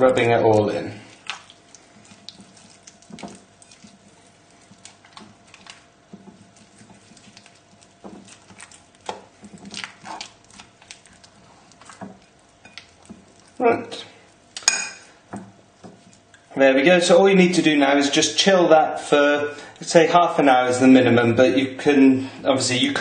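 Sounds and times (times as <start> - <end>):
hands squelching marinade into chicken: 0.6 - 16.5.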